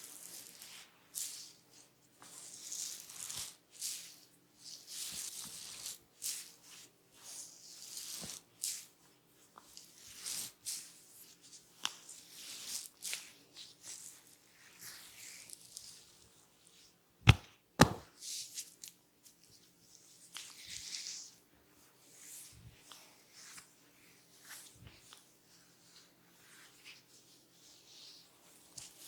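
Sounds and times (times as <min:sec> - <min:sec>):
hands rubbing hair: 0:17.3 - 0:18.0.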